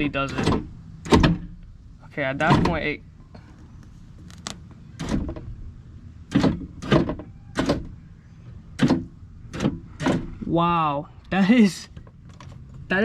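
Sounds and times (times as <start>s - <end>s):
car door clunks and rattles: 0.0s - 1.6s, 2.4s - 3.0s, 5.0s - 5.6s, 6.3s - 8.0s, 8.8s - 10.4s.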